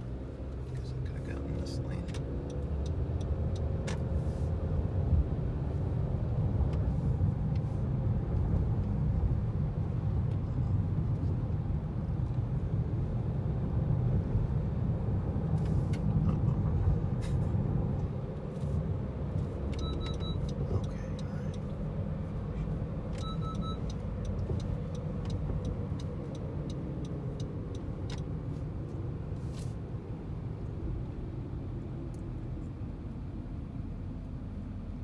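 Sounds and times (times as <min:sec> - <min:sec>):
car road and engine rumble: 0:00.0 - 0:35.0.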